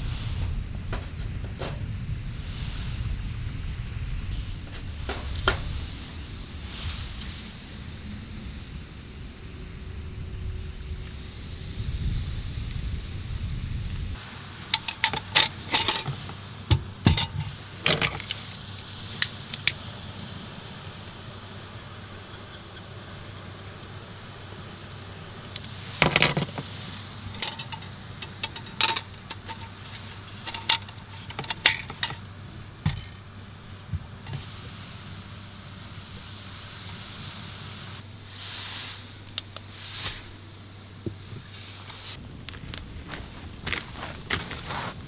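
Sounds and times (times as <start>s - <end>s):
cookware and utensils clinking: 14.2s - 18.5s, 25.9s - 33.2s.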